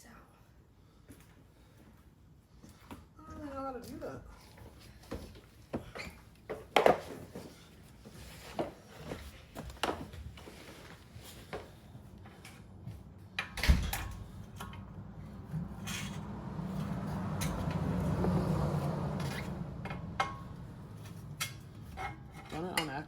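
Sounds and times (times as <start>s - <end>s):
tools clunking and scraping: 4.8s - 23.0s.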